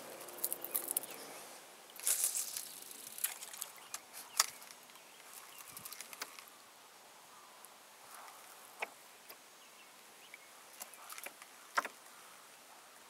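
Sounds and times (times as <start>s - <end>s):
outdoor background hiss: 0.0s - 13.0s
brief rustle: 0.1s - 6.5s.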